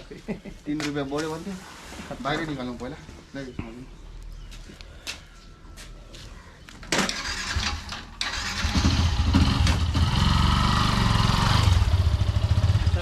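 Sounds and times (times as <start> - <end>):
motorcycle engine starting and idling: 6.9 - 13.0.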